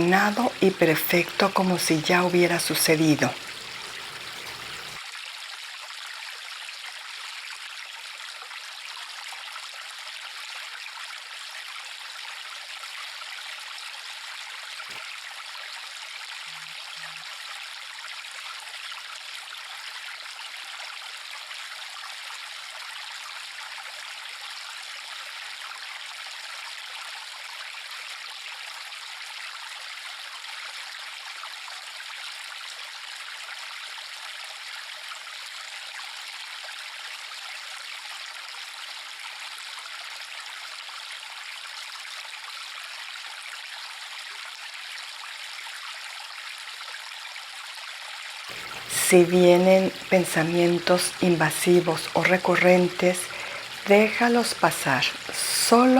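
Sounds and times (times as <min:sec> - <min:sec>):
stream rushing over stones: 0:00.0 - 0:05.0, 0:48.5 - 0:55.9.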